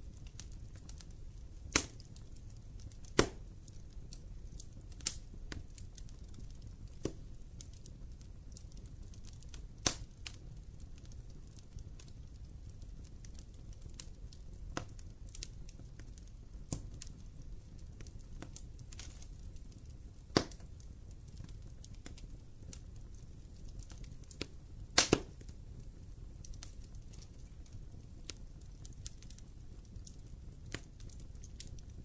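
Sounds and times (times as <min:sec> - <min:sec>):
fire crackling and popping: 0:00.0 - 0:32.0
fire rumbling: 0:00.0 - 0:32.0.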